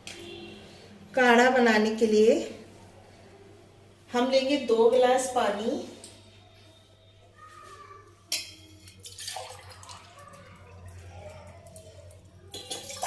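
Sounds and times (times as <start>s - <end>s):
water pouring into a pot: 8.8s - 13.0s.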